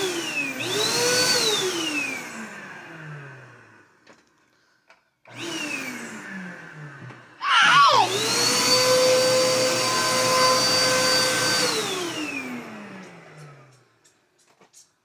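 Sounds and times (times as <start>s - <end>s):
vacuum cleaner motor whining: 0.0s - 4.2s, 5.2s - 13.8s.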